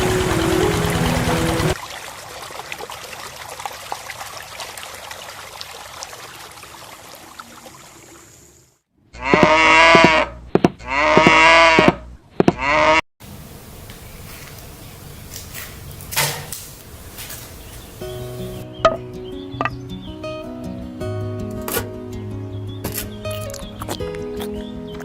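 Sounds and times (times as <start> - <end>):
faint trickling water: 0.0 - 8.7, 13.2 - 18.6
cow mooing: 9.2 - 12.0.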